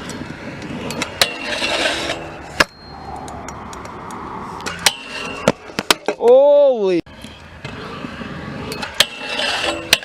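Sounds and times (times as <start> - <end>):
scooter deck clacking on ground: 0.0 - 4.0, 4.6 - 6.5, 8.7 - 10.0
scooter wheels rolling on concrete: 0.0 - 10.0.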